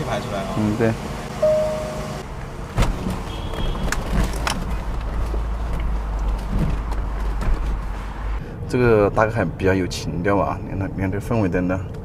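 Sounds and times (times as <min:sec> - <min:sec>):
engine low rumble: 0:00.0 - 0:03.2
short electronic beep: 0:01.4 - 0:02.2.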